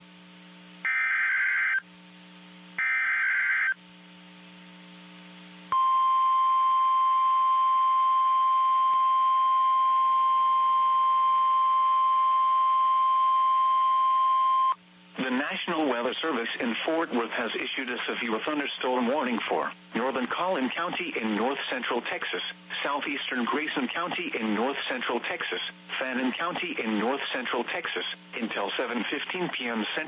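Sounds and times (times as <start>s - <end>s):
steady warning alarm tone: 0.9s - 1.8s, 2.8s - 3.8s.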